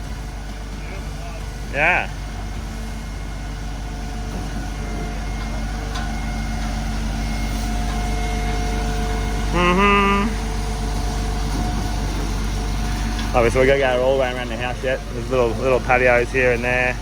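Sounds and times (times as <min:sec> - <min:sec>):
truck engine running: 0:00.0 - 0:17.0
person calling out: 0:09.5 - 0:10.4.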